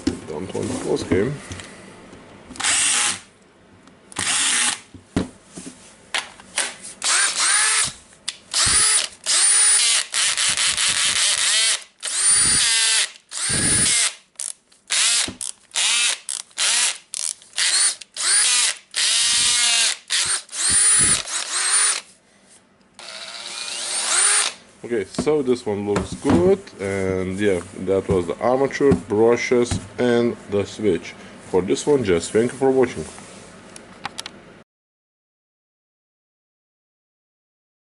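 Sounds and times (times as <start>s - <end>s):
cordless drill whining in bursts: 2.6s - 3.3s, 4.2s - 4.8s, 7.0s - 14.2s, 14.9s - 22.1s, 23.0s - 24.6s.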